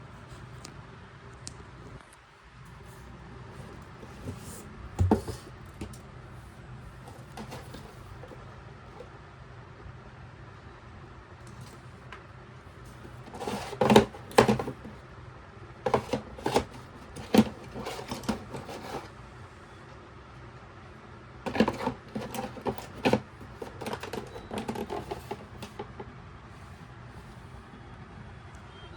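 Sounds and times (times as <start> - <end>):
hard objects clicking and knocking: 3.6 - 6.0, 7.1 - 8.4, 12.9 - 15.0, 15.8 - 19.1, 21.4 - 26.1.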